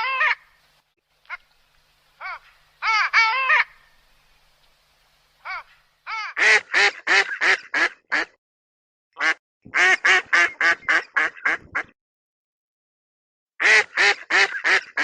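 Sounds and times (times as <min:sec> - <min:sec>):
duck quacking: 0:00.0 - 0:00.6, 0:02.2 - 0:03.9, 0:05.4 - 0:08.4, 0:09.2 - 0:12.0, 0:13.6 - 0:15.0.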